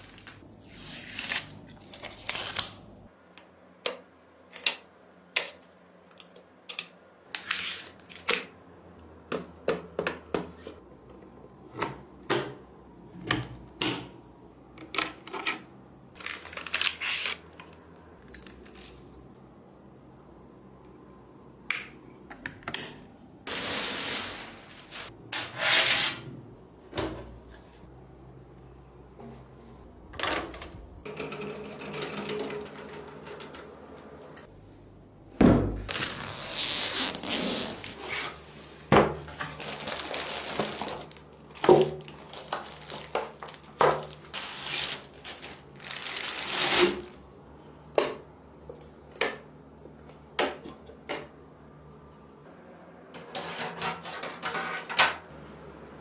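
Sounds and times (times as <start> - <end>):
rustling and sliding: 23.5 - 26.3, 37.1 - 47.1.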